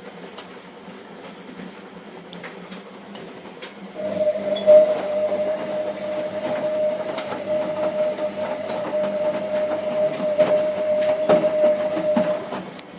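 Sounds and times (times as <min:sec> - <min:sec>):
washing machine motor whine: 0:00.0 - 0:12.9
drum clacking and rattling: 0:04.0 - 0:12.8.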